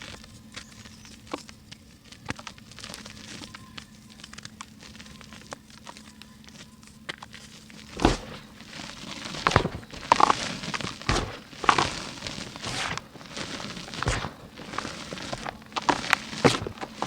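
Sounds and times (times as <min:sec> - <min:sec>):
dry mud crumbling by hand: 0:07.9 - 0:17.0.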